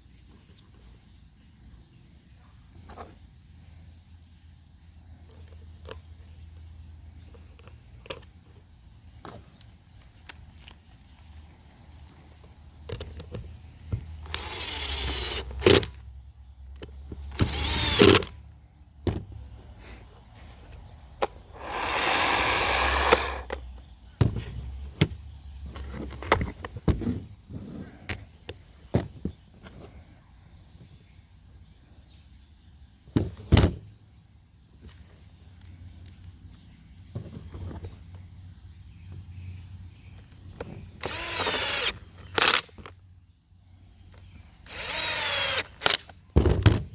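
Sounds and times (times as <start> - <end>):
plastic parts clicking and knocking: 12.8 - 16.0
cordless drill driving screws: 14.2 - 16.0, 17.2 - 18.4, 21.6 - 23.6, 41.0 - 42.8, 44.6 - 46.2.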